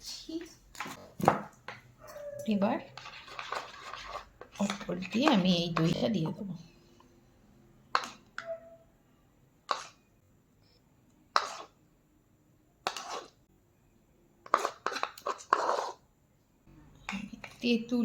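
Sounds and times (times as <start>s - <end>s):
spoon scraping a bowl: 2.0s - 6.4s, 7.9s - 8.7s, 9.6s - 10.1s, 11.3s - 11.8s, 12.8s - 13.4s, 14.4s - 16.0s, 17.0s - 17.7s.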